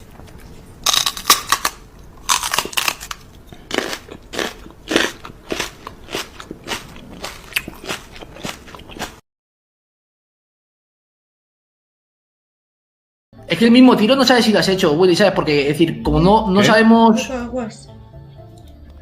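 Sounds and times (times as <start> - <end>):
crunchy food being chewed: 0.0 - 9.2.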